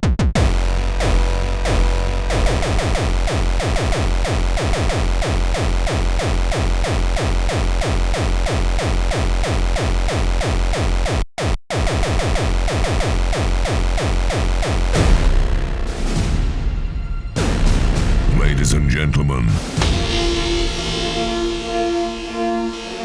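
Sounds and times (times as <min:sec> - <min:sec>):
rapid kick drum: 0:00.0 - 0:16.6
fast techno music: 0:00.4 - 0:09.4, 0:18.2 - 0:19.8.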